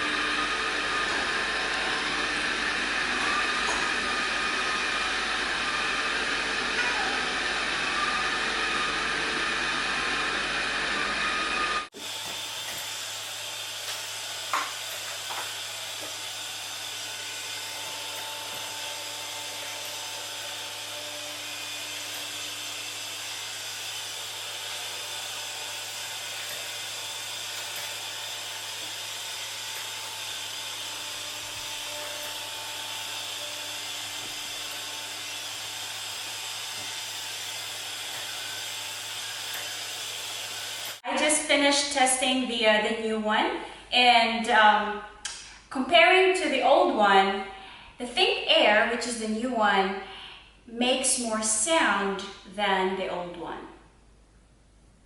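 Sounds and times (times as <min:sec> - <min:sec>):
robot vacuum whirring: 0:00.0 - 0:41.0.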